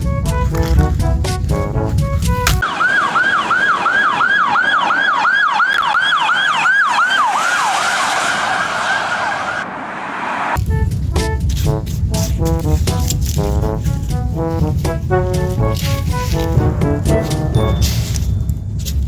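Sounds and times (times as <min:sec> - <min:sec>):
music: 0:00.0 - 0:02.6, 0:10.6 - 0:19.0
electronic siren yelping: 0:02.6 - 0:09.7.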